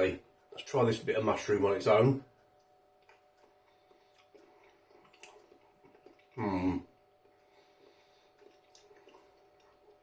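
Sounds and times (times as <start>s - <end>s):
man saying mm: 6.4s - 6.9s.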